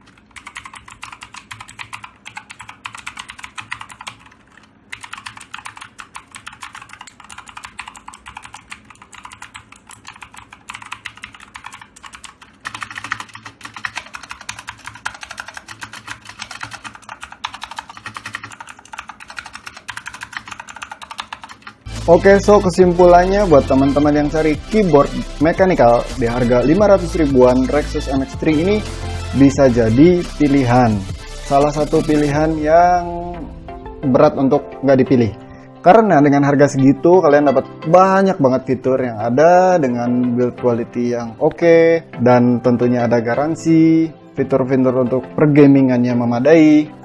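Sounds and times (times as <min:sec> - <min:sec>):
mechanical keyboard typing: 0:00.0 - 0:21.9, 0:23.3 - 0:32.6.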